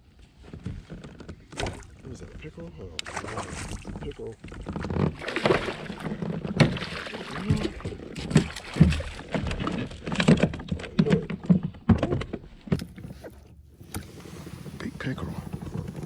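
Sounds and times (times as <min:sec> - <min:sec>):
knocks and bumps on kayak: 0:00.5 - 0:02.0, 0:03.6 - 0:14.0
water splashes: 0:03.0 - 0:04.4, 0:05.0 - 0:10.4.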